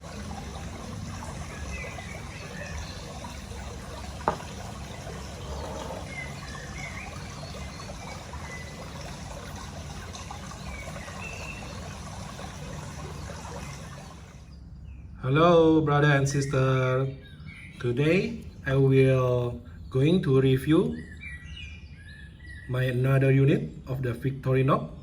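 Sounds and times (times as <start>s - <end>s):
steady trickling noise: 0.0s - 15.2s.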